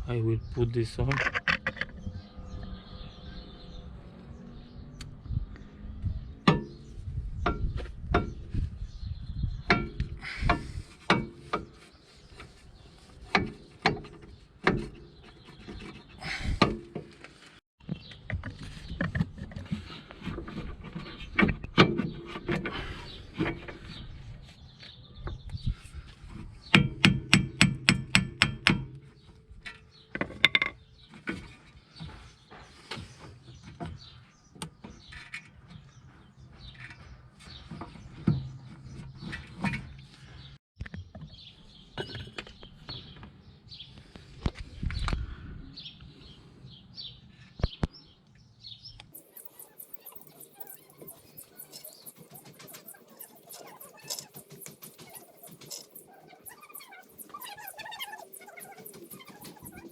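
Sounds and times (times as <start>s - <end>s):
metal parts and tools clinking: 49.2s - 59.9s.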